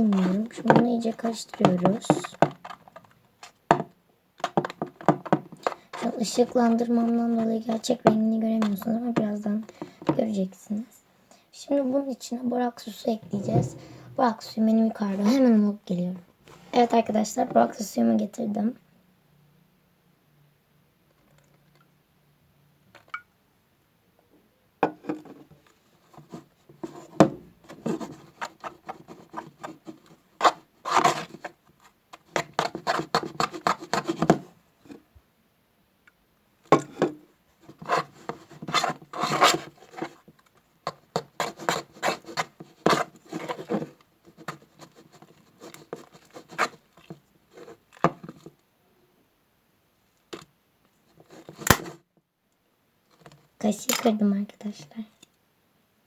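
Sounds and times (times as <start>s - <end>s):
spoon stirring slime in bowl: 0.0s - 3.1s, 4.4s - 10.4s, 40.9s - 48.4s.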